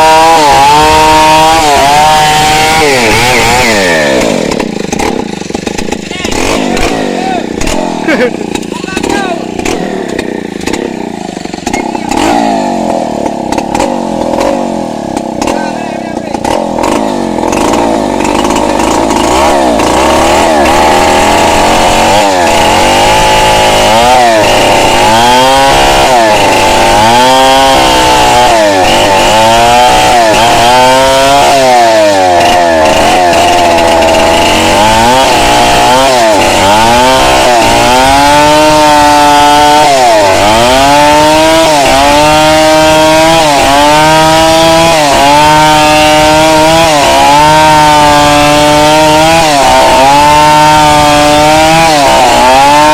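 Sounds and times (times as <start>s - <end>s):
chainsaw cutting through log: 0.0s - 52.9s.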